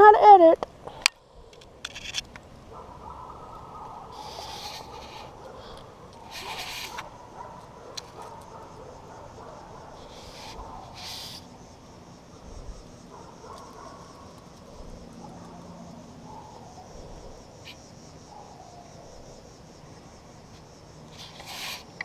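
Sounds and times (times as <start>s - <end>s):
insects chirping: 0.0s - 22.0s
short hiss: 21.1s - 22.0s.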